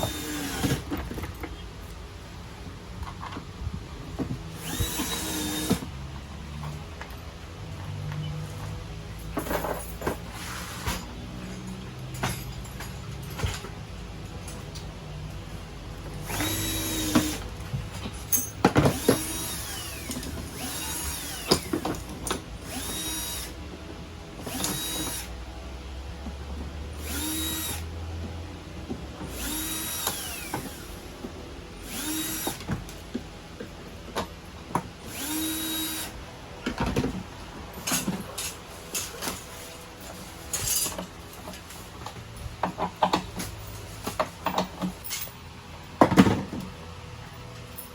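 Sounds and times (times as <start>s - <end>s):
power drill whining in bursts: 0.0s - 0.9s, 4.6s - 5.9s, 16.2s - 17.5s, 18.8s - 21.8s, 22.6s - 23.6s, 24.4s - 25.3s, 27.0s - 27.9s, 29.3s - 31.0s, 31.8s - 32.7s, 35.1s - 36.2s.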